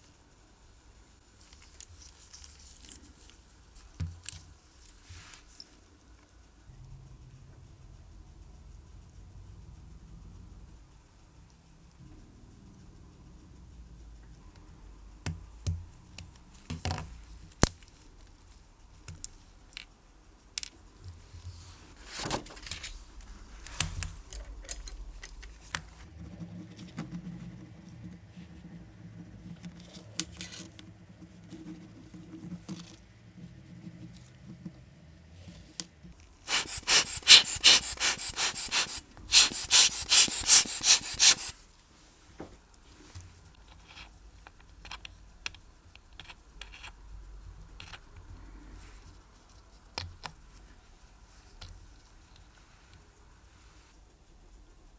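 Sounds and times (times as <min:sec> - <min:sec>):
rapid rasping strokes: 0:36.5 - 0:41.5.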